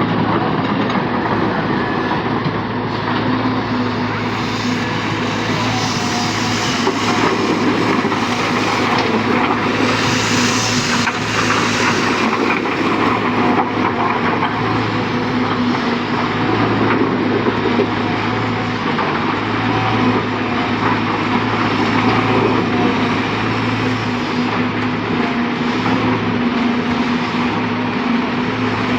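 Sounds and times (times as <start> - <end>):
heavy diesel machinery engine: 0.0 - 28.9.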